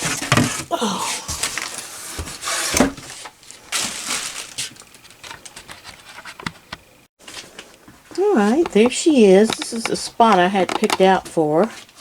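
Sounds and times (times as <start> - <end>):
packing material rustling: 0.0 - 6.4.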